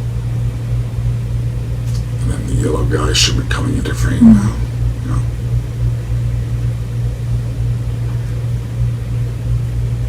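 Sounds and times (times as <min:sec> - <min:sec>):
steady low rumble: 0:02.4 - 0:06.0.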